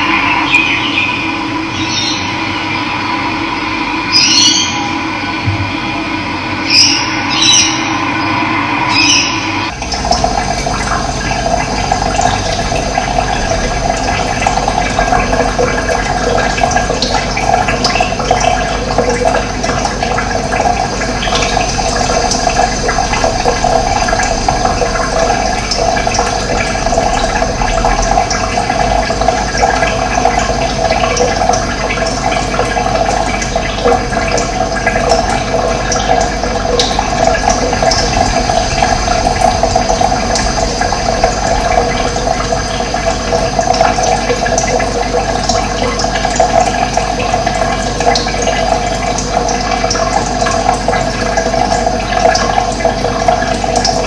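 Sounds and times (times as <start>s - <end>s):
running water: 0.0s - 54.0s.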